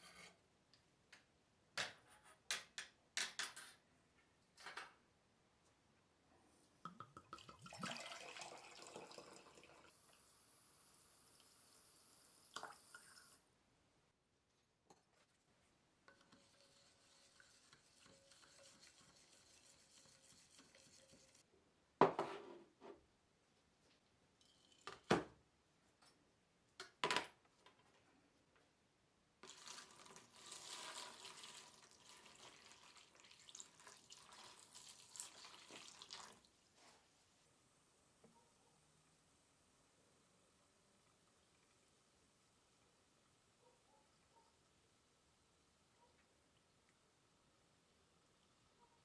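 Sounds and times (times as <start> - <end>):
brush scrubbing: 16.1 - 21.4.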